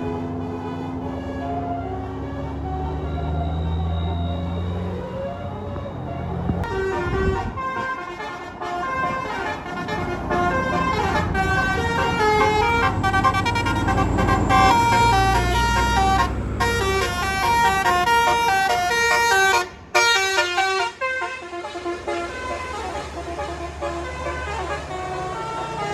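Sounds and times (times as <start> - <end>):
air horn playing fast melody: 6.7 - 25.9
low engine hum: 9.7 - 20.0.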